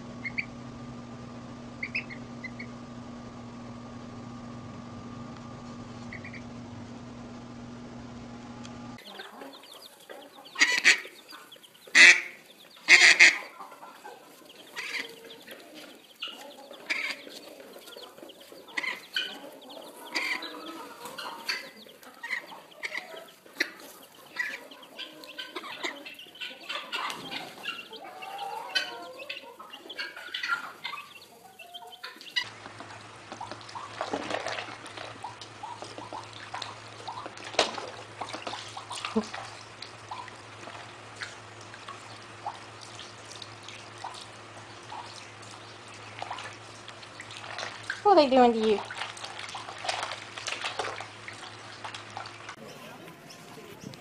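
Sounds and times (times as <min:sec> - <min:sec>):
poultry calling: 0:00.0 - 0:00.6, 0:01.7 - 0:02.8, 0:06.0 - 0:06.6, 0:09.0 - 0:48.0.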